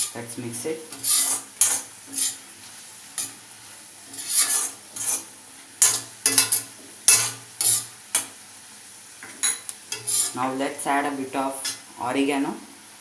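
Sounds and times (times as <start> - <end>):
vegetables sizzling in pan: 0.0 - 13.0
spatula scraping frying pan: 0.9 - 8.3, 9.2 - 10.5.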